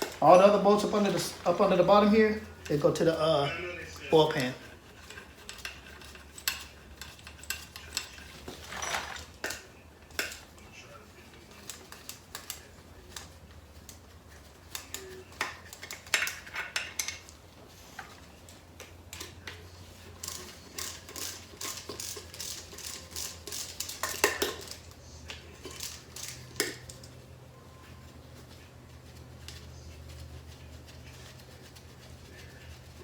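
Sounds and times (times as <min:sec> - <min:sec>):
ratchet clicking: 0:20.2 - 0:24.2.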